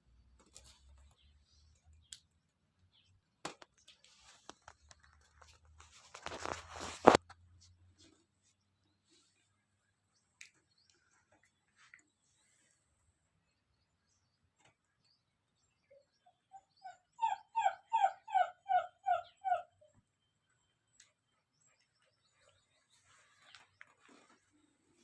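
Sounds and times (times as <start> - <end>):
puppy yelping: 16.5 - 19.9.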